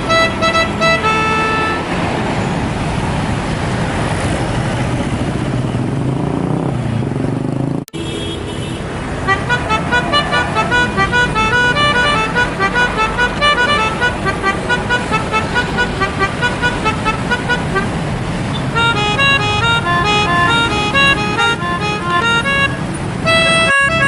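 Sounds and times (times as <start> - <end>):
multi-note bus air horn: 0.0 - 1.9, 9.3 - 18.0, 18.6 - 24.0
bus engine: 0.0 - 24.0
traffic noise: 0.0 - 24.0.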